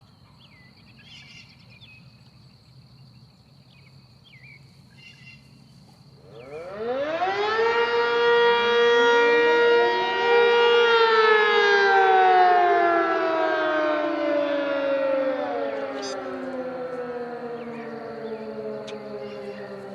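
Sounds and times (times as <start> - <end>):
warning siren winding up and down: 6.2 - 19.9.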